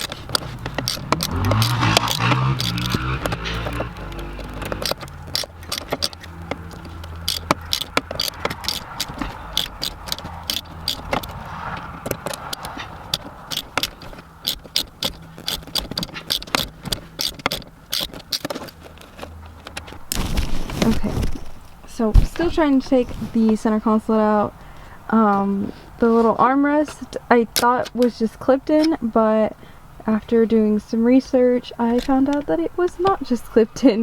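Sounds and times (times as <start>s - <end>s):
hand tools clicking and rattling: 0.0s - 23.6s, 26.8s - 29.1s.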